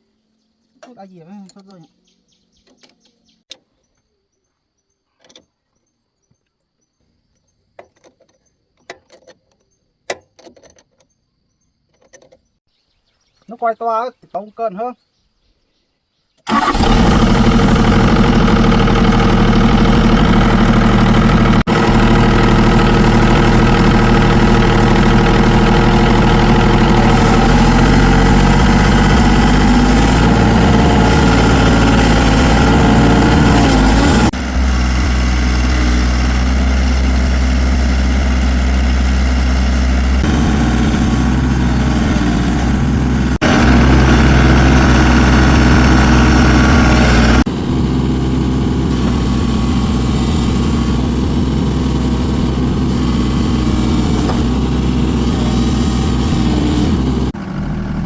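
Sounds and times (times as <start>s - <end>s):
vehicle engine running: 16.5s - 58.0s.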